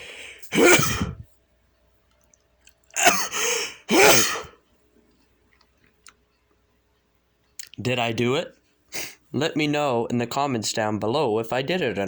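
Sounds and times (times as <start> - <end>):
man sneezing loudly: 0.4 - 1.2, 3.0 - 4.6.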